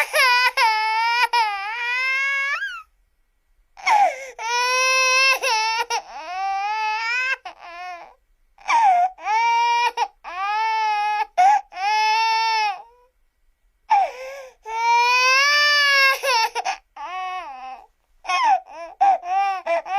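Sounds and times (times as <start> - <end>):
baby crying: 0.0 - 2.9, 3.8 - 13.1, 13.9 - 19.9.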